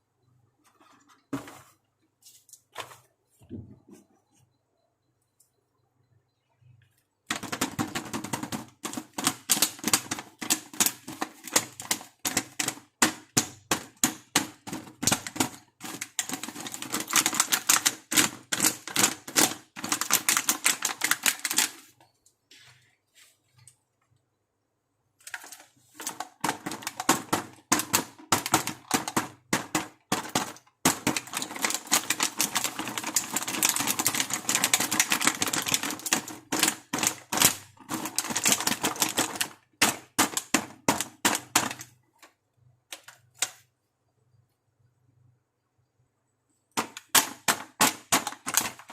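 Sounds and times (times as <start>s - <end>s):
plastic toy pieces clicking: 7.3s - 21.8s, 25.2s - 41.9s, 46.8s - 48.9s.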